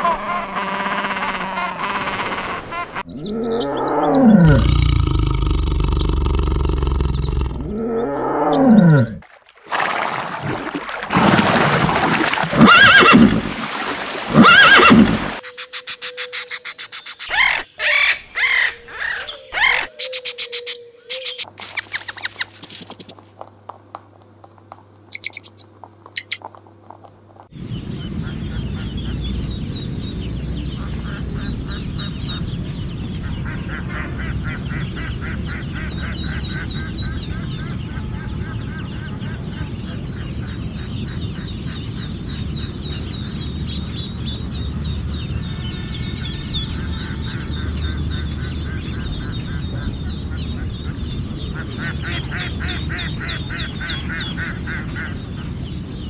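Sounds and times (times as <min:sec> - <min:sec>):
animal calls: 0:00.0 - 0:09.2.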